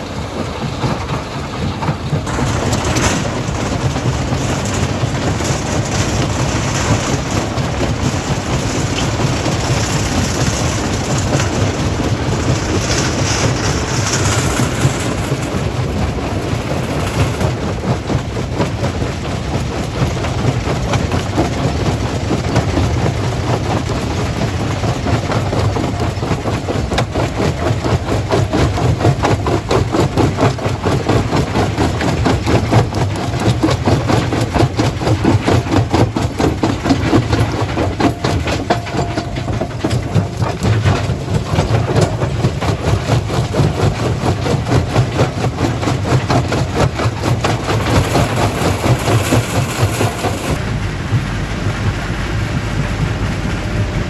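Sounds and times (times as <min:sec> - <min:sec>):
dense machinery clattering: 0:00.0 - 0:51.0
low engine drone: 0:33.6 - 0:54.0.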